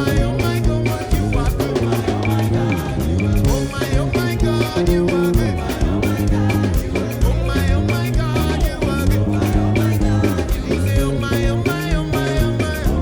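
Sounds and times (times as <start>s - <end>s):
bass line: 0.0s - 13.0s
drum kit beat: 0.0s - 13.0s
guitar: 0.0s - 13.0s.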